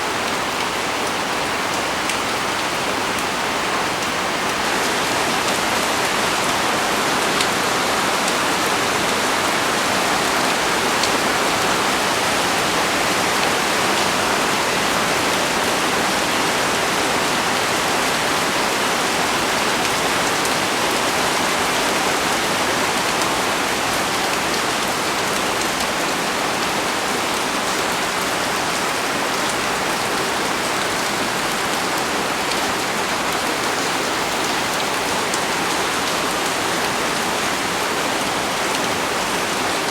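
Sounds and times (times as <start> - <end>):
heavy rain on leaves: 0.0 - 39.9.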